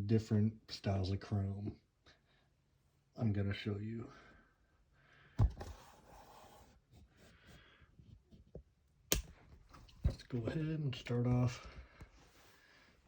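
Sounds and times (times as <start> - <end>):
sharp click: 9.1 - 9.3.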